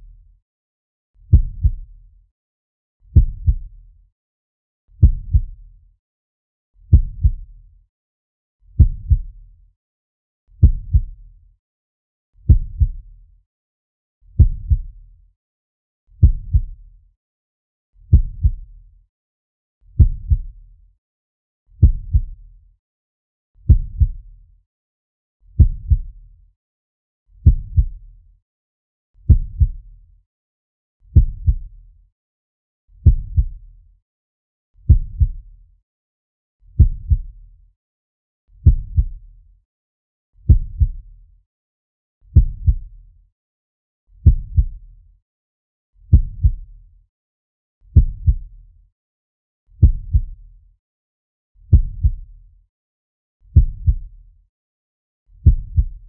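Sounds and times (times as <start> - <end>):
heartbeat double thump: 3.2 - 3.6, 5.0 - 5.5, 6.9 - 7.4, 8.8 - 9.3, 10.6 - 11.1, 12.5 - 13.0, 14.4 - 14.8, 16.2 - 16.7, 18.1 - 18.6, 20.0 - 20.4, 21.8 - 22.3, 23.7 - 24.2, 25.6 - 26.1, 27.4 - 27.9, 29.3 - 29.8, 31.2 - 31.6, 34.9 - 35.4, 36.8 - 37.2, 40.5 - 41.0, 42.4 - 42.9, 46.1 - 46.6, 48.0 - 48.4, 49.8 - 50.3, 51.7 - 52.2, 53.6 - 54.0, 55.4 - 55.9.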